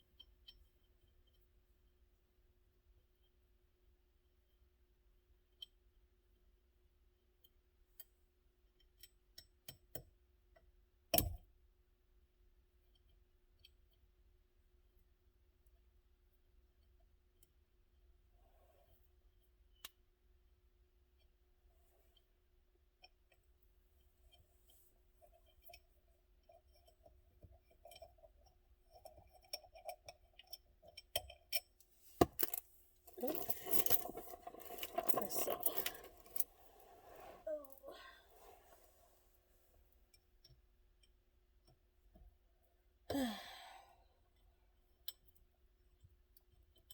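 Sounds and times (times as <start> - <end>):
small parts clicking and knocking: 25.4 - 36.9.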